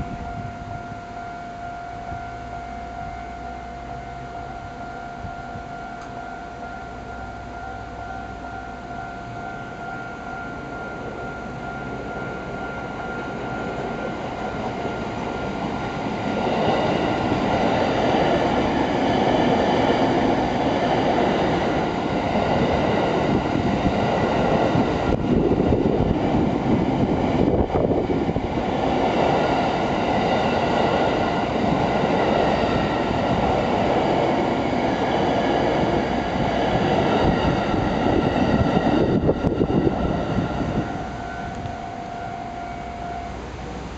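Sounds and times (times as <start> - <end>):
level-crossing electronic bell: 0.0 - 18.6, 39.6 - 43.9
train wheels on rails: 4.4 - 43.9.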